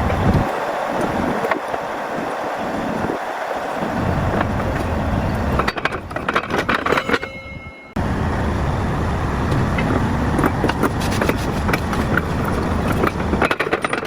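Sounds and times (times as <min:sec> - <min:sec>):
heavy diesel equipment running: 0:02.9 - 0:14.0
metallic knocks and clanks: 0:05.5 - 0:08.0.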